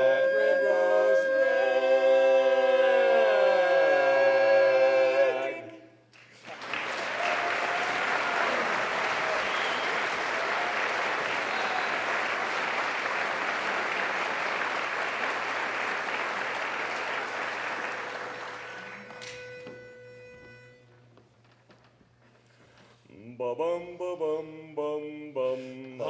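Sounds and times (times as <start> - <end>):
audience applauding: 6.1 - 19.3.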